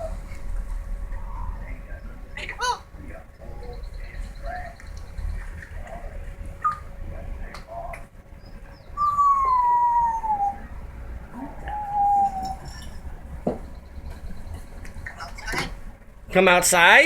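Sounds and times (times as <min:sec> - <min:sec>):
pet bird calling: 0:08.8 - 0:10.7, 0:11.3 - 0:12.8.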